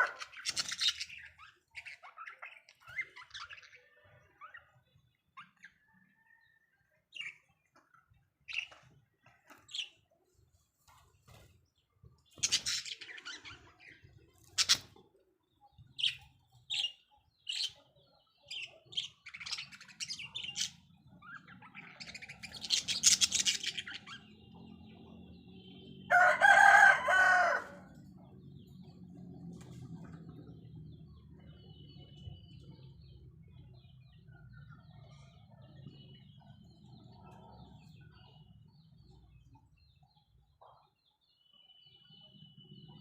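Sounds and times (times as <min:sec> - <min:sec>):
budgerigars chirping and squawking: 0:00.0 - 0:06.0, 0:07.1 - 0:10.1, 0:12.2 - 0:15.0, 0:15.8 - 0:28.9.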